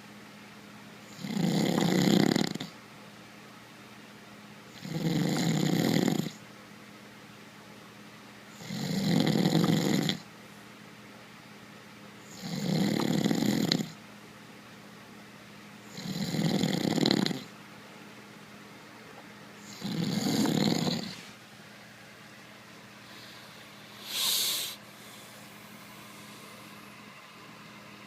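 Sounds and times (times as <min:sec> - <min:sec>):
man snoring: 0:01.1 - 0:02.7, 0:04.8 - 0:06.4, 0:08.6 - 0:10.2, 0:12.3 - 0:14.0, 0:15.9 - 0:17.5, 0:19.7 - 0:21.2, 0:24.0 - 0:25.2.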